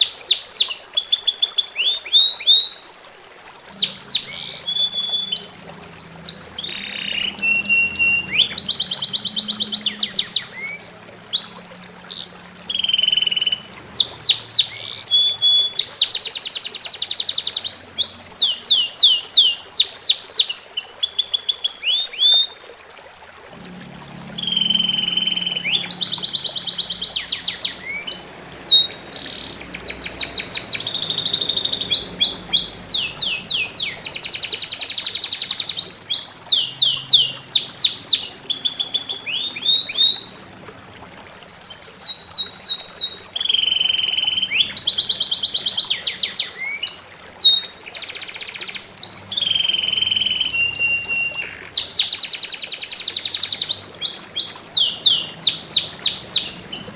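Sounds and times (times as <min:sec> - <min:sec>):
faint trickling water: 0:00.0 - 0:56.9
songbird singing: 0:03.6 - 0:22.7, 0:23.5 - 0:40.5, 0:41.6 - 0:56.9.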